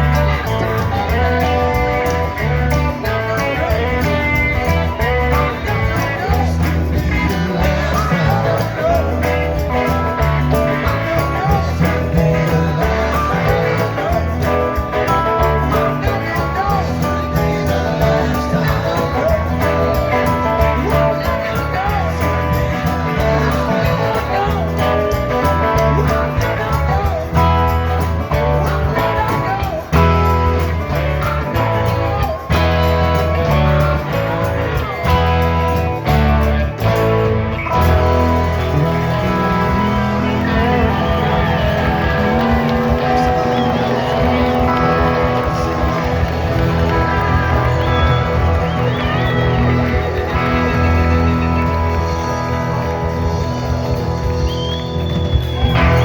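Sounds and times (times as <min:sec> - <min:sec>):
bass line: 0:00.0 - 0:56.0
electric guitars: 0:00.0 - 0:56.0
drum beat: 0:37.9 - 0:56.0.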